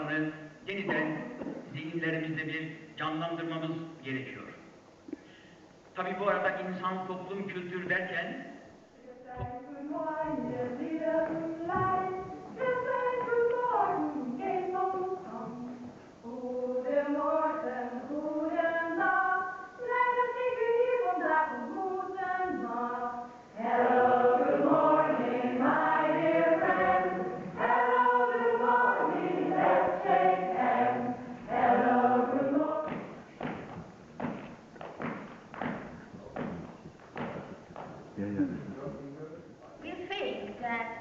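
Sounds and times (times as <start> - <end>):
choir singing: 9.0 - 33.0.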